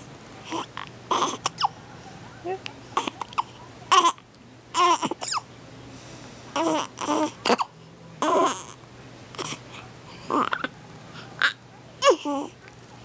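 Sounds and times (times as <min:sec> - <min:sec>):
baby whimpering: 0:00.4 - 0:01.7, 0:04.8 - 0:05.4, 0:06.6 - 0:10.7, 0:11.4 - 0:12.6
baby hiccuping: 0:00.4 - 0:01.8, 0:03.0 - 0:04.2, 0:04.8 - 0:05.5, 0:06.6 - 0:09.6, 0:10.3 - 0:10.8, 0:11.4 - 0:12.5.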